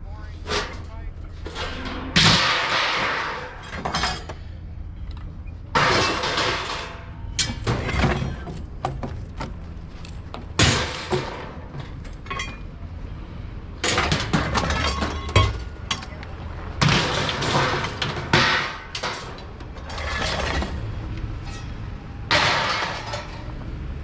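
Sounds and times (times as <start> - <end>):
scrap metal crashing onto pile: 0.5 - 4.4, 5.8 - 8.7, 10.5 - 12.7, 13.8 - 16.2, 16.8 - 23.9.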